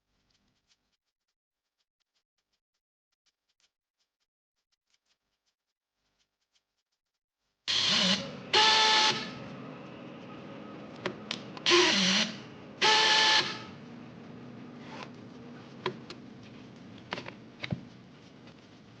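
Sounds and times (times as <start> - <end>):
strapping tool motor running: 7.7 - 9.5, 11.0 - 13.9.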